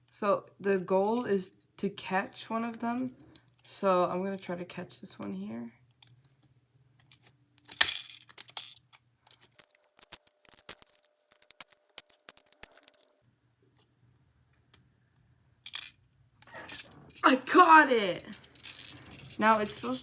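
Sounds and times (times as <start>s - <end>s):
plastic claw clicks and rattles: 7.0s - 13.2s.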